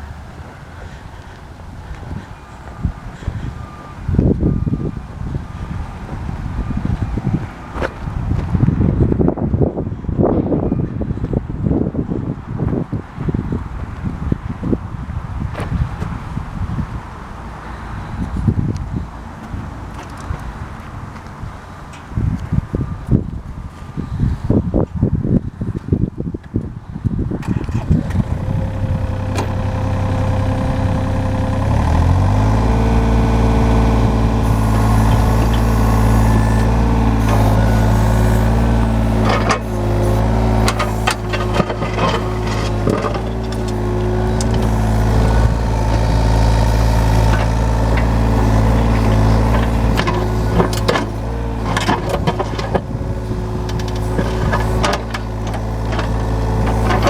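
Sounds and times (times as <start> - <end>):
excavator diesel engine running: 0.0 - 9.3, 27.5 - 57.0.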